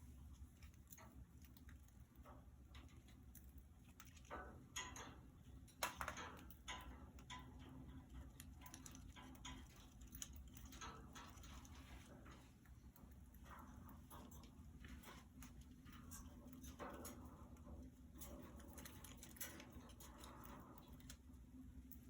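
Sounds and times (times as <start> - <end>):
small clicks and taps: 0.2 - 22.0.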